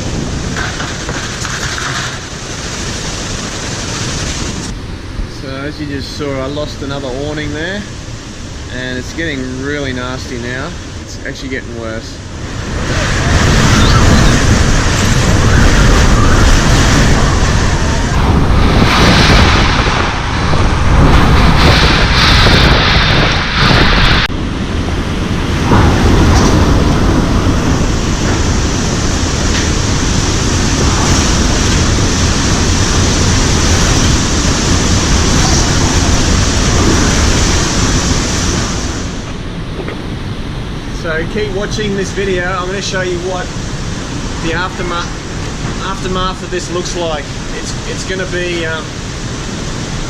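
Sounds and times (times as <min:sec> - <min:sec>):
strong gusty wind rushing: 0:00.0 - 0:50.0
wind buffeting microphone: 0:00.0 - 0:50.0.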